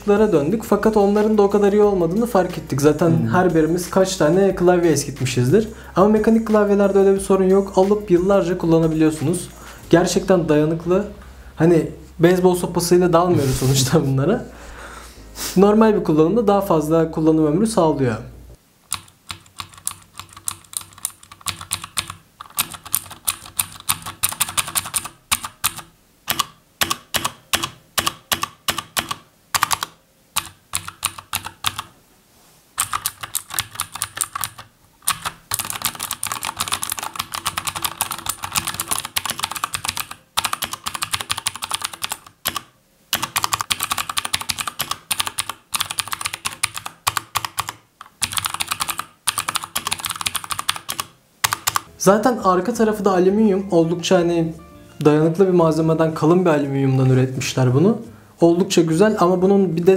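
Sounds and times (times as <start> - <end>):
fast typing on clicky keyboard: 18.9 - 31.9, 32.8 - 51.9.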